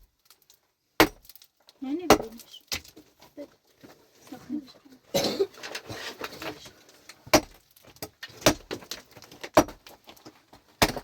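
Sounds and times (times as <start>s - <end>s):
pickaxe striking rock: 1.0s - 1.4s, 2.1s - 2.8s, 7.3s - 9.8s, 10.8s - 11.0s.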